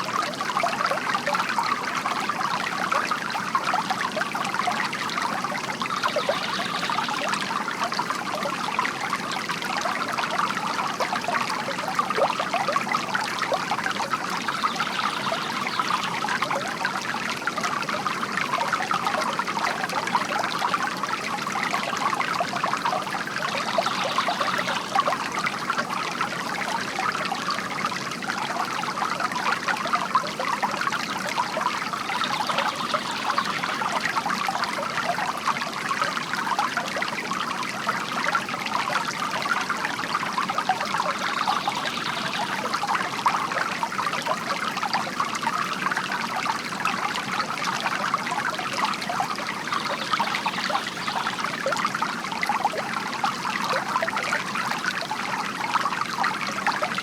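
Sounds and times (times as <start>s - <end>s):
water trickling from fountain: 0.0s - 57.0s.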